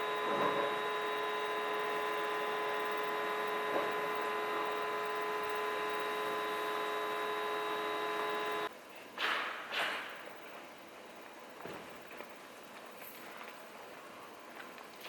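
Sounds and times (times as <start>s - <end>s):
level crossing alarm ringing: 0.0s - 8.7s.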